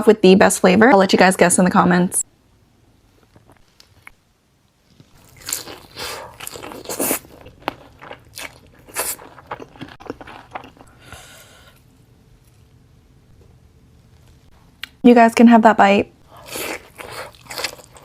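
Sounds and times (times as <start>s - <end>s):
crunching fried chicken skin: 4.9s - 10.9s, 16.4s - 18.0s
chewing: 4.9s - 11.0s, 16.3s - 18.0s.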